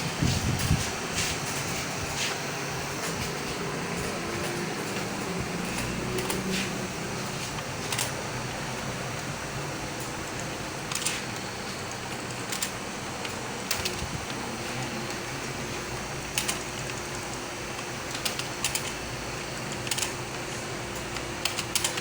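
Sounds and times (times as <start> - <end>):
steady background hum: 0.0 - 22.0
computer keyboard keystrokes: 5.7 - 6.8, 7.6 - 8.2, 10.9 - 14.4, 16.2 - 19.0, 19.7 - 22.0.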